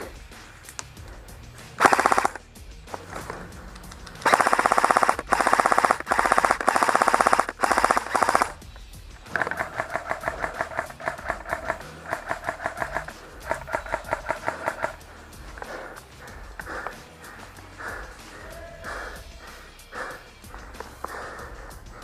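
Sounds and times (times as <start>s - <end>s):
airsoft guns firing: 1.8s - 2.4s, 4.2s - 8.6s, 9.2s - 15.0s.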